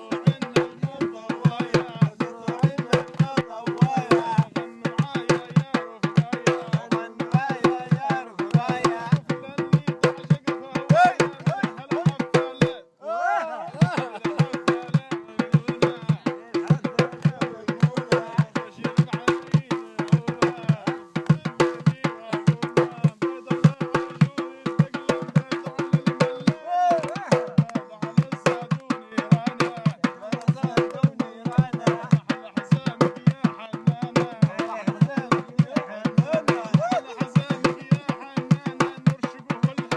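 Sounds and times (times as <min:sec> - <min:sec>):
fast hand drumming: 0:00.0 - 0:12.8, 0:13.8 - 0:39.9
voices singing: 0:00.0 - 0:39.9.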